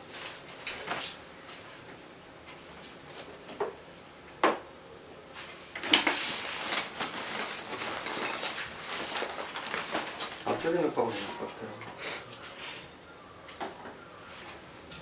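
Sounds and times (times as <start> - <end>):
rustling with clicks and clatter: 5.4 - 10.9.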